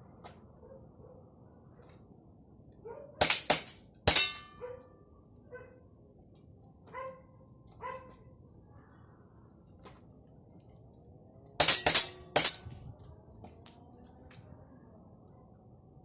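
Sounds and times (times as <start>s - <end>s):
dog barking: 2.8s - 3.2s, 4.6s - 4.9s, 5.5s - 5.8s, 6.9s - 8.2s
short metallic ring: 3.2s - 4.6s, 11.6s - 12.8s.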